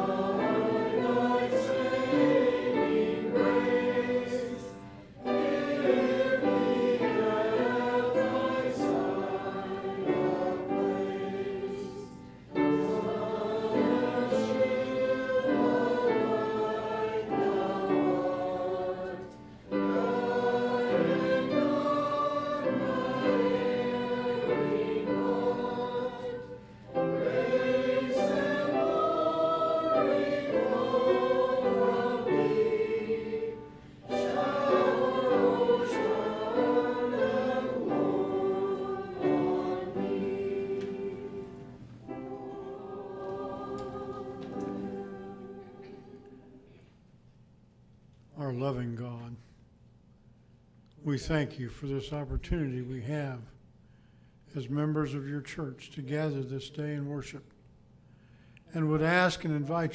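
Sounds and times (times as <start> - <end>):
group singing a hymn: 0.0 - 46.9.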